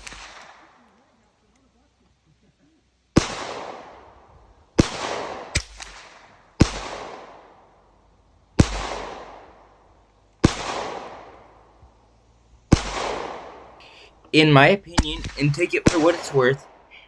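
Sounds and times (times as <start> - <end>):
gunshots with echo: 0.0 - 0.5, 12.7 - 16.6.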